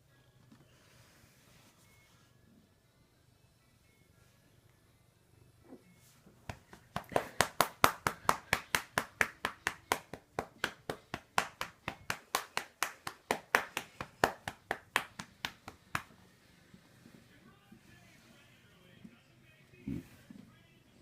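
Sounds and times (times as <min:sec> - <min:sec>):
hand patting cat: 0:06.5 - 0:16.2.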